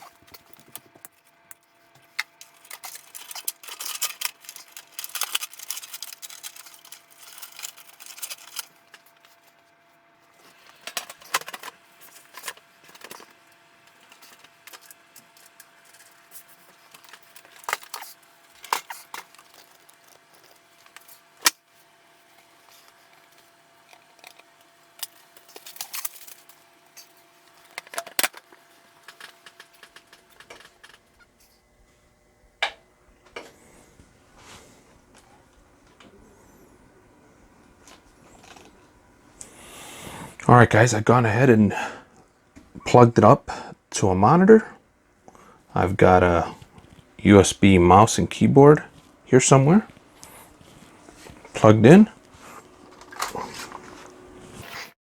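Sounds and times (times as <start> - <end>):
computer parts clicking and rattling: 0.0 - 9.2, 10.5 - 21.6, 22.7 - 31.1.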